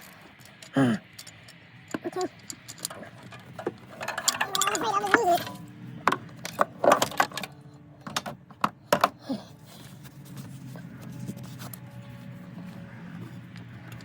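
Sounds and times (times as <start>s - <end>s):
hand tools clinking on metal: 0.0s - 8.4s.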